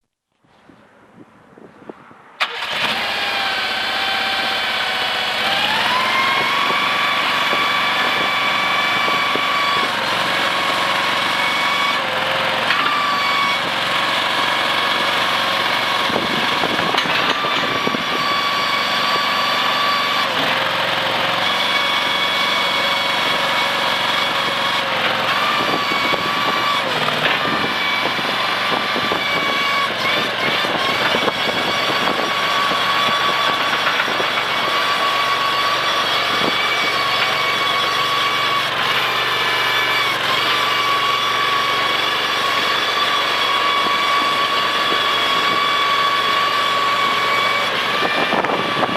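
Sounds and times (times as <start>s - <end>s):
skid steer engine running: 2.4s - 48.9s.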